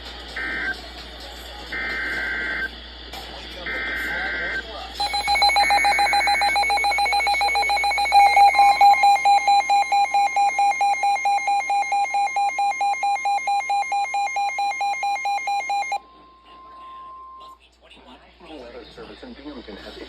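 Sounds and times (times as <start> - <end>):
fast-pulsing alarm beep: 5.0 - 16.0
steady warning alarm tone: 5.0 - 16.0.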